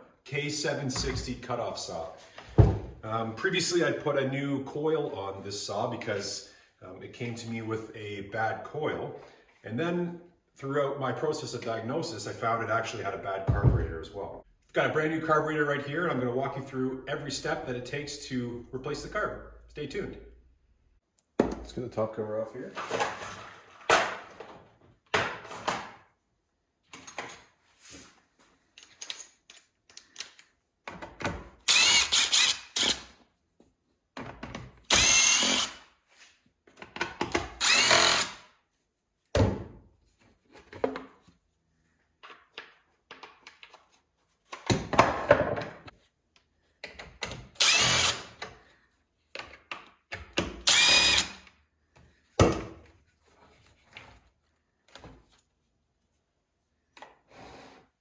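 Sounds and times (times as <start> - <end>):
power drill whining: 31.7 - 33.0, 34.9 - 35.8, 37.6 - 38.4, 47.6 - 48.3, 50.6 - 51.4.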